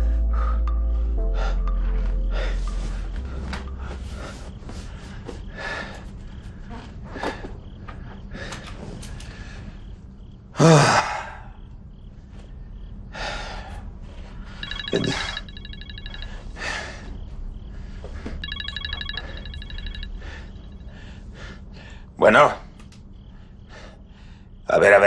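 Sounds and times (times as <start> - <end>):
telephone ringing: 14.6 - 16.5, 18.4 - 20.8.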